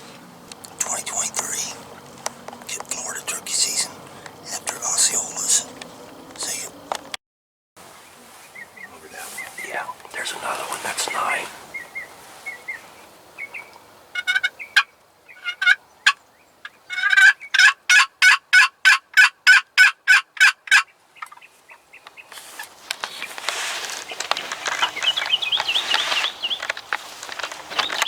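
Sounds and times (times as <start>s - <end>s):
rustling noise: 7.8s - 13.1s, 22.2s - 28.0s
turkey yelps: 14.2s - 16.2s, 16.9s - 21.4s.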